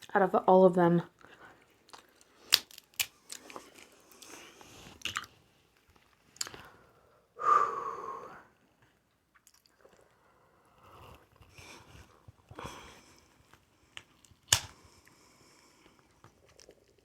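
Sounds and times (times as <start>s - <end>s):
chewing: 1.2s - 6.6s, 9.0s - 17.0s
crab shell cracking: 1.8s - 5.3s, 13.5s - 15.2s.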